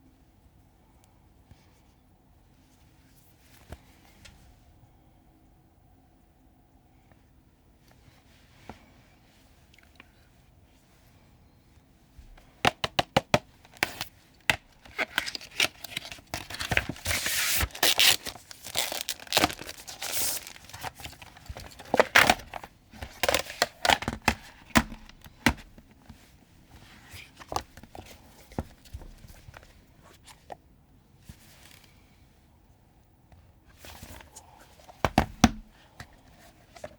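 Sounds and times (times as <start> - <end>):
packaging sharp clicks: 12.7 - 25.6
packaging tearing and crinkling: 13.6 - 25.5.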